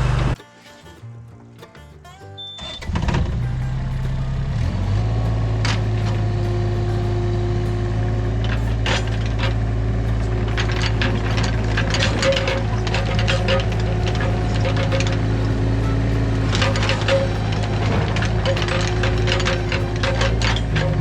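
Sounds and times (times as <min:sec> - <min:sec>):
earth-moving machine engine: 0:00.0 - 0:00.4, 0:02.7 - 0:21.0
machine clanks and knocks: 0:04.7 - 0:21.0.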